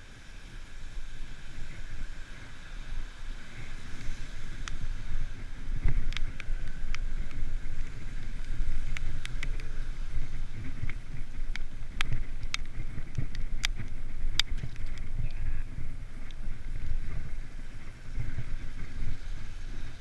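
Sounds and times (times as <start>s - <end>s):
wind buffeting microphone: 0.0s - 20.0s
bicycle ticks and clicks: 0.1s - 20.0s.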